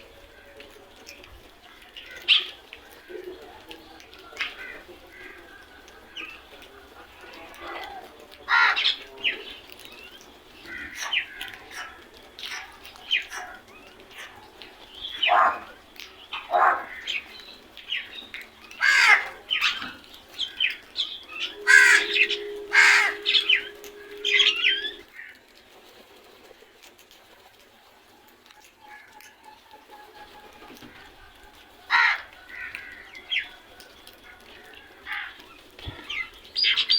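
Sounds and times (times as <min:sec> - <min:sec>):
crows cawing: 0:01.7 - 0:09.2, 0:10.6 - 0:17.4, 0:18.0 - 0:25.0, 0:31.8 - 0:36.2
steady low hum: 0:21.4 - 0:25.0.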